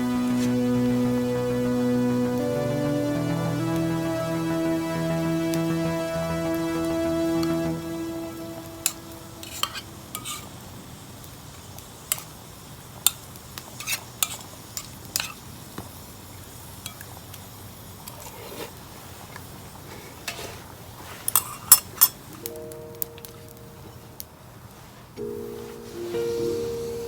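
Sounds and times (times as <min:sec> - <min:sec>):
low steady background: 0:00.0 - 0:11.2, 0:21.4 - 0:27.0
cutlery clinking on cookware: 0:09.4 - 0:10.5, 0:13.8 - 0:15.4, 0:21.2 - 0:22.3.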